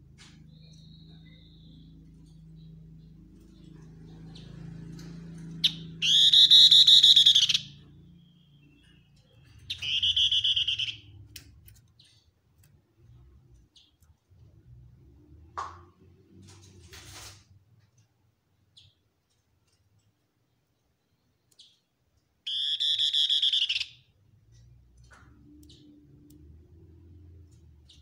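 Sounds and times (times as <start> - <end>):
bird singing fast trills: 0.4 - 4.8, 5.4 - 11.3, 22.5 - 24.1.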